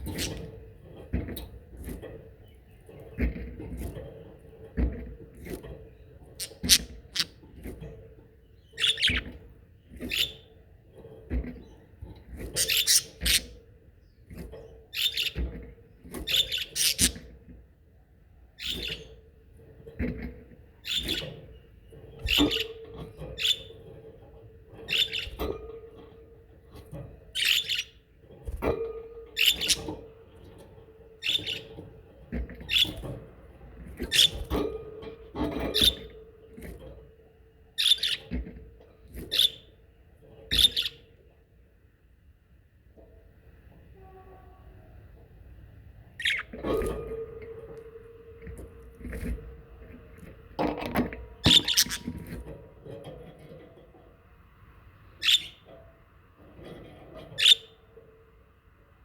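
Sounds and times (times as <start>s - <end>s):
budgerigars chirping: 0.0s - 0.4s, 6.4s - 7.3s, 8.8s - 9.3s, 12.6s - 13.5s, 16.3s - 17.2s, 27.4s - 27.9s, 29.4s - 30.0s, 46.2s - 46.5s, 51.5s - 52.2s, 55.2s - 55.6s, 57.4s - 57.7s.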